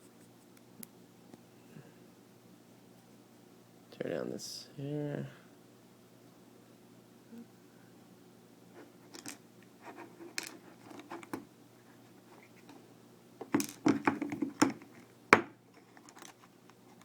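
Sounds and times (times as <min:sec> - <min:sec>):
metal lock parts clicking: 0:15.8 - 0:16.4.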